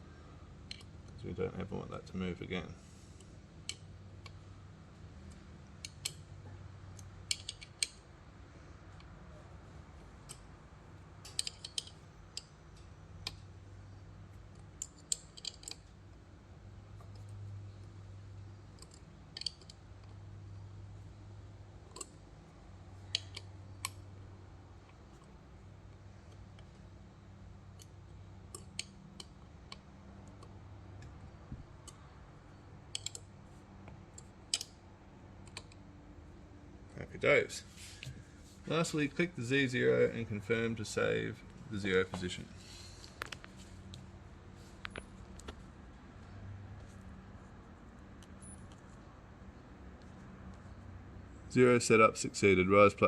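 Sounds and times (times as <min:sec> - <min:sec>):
low steady hum: 0:00.0 - 0:53.0
small metallic tool clicks: 0:07.0 - 0:08.0, 0:11.2 - 0:13.5, 0:14.8 - 0:15.9, 0:18.8 - 0:19.8, 0:23.1 - 0:24.0, 0:32.9 - 0:33.3
screws tightening metal clicks: 0:07.3 - 0:08.0.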